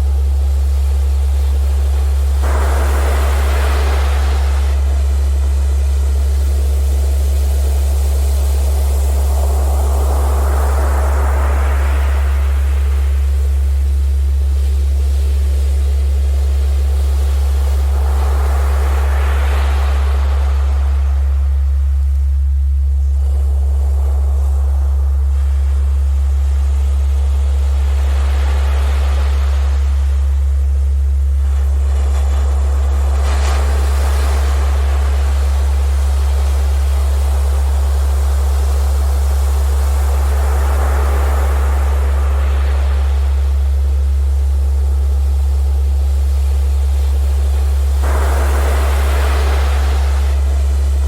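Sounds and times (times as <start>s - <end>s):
steady deep tone: 0.0s - 51.0s
ocean surf: 2.4s - 5.2s, 9.2s - 13.2s, 17.8s - 21.6s, 27.7s - 30.3s, 31.4s - 38.0s, 39.7s - 43.8s, 47.9s - 51.0s.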